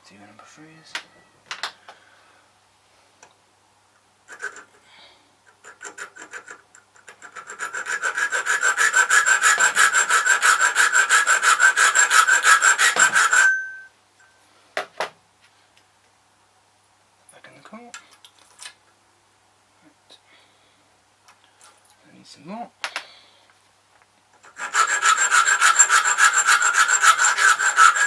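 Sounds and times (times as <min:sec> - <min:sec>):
hand file rasping on metal: 0:04.3 - 0:04.7, 0:05.5 - 0:13.9, 0:24.4 - 0:28.0.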